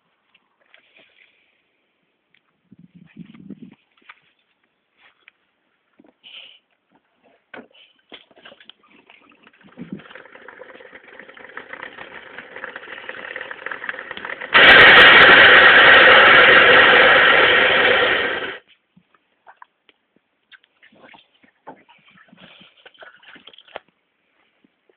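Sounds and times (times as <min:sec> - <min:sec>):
two-stroke moped engine running: 0:09.5 - 0:18.6.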